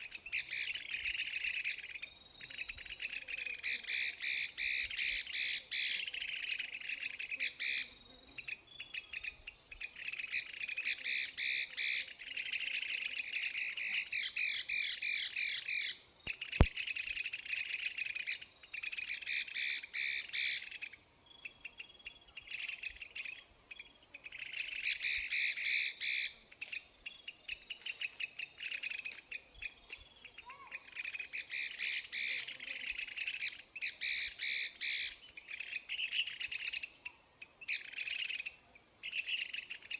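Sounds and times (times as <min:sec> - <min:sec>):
sharp click: 0:16.6 - 0:16.8.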